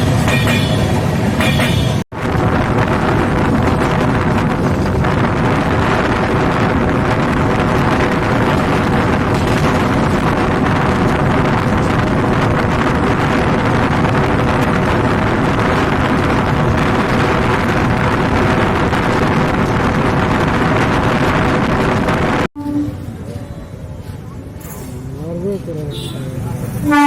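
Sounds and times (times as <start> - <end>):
moving train rushing: 0.0 - 27.0
wind buffeting microphone: 2.1 - 22.5.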